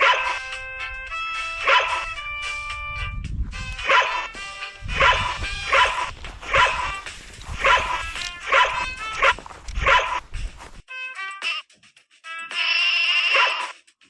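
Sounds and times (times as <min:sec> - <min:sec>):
dog barking: 0:00.0 - 0:00.4, 0:01.6 - 0:02.2, 0:03.8 - 0:10.2, 0:13.3 - 0:13.7.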